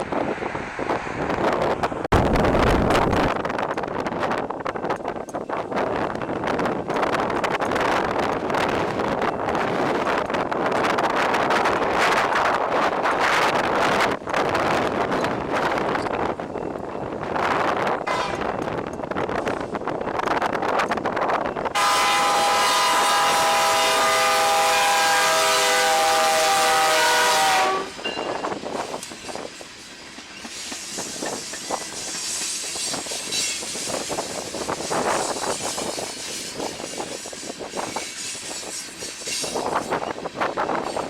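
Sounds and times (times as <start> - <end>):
locomotive air horn: 18.1 - 18.7, 21.8 - 28.0
train wheels clacking on rails: 25.5 - 41.0.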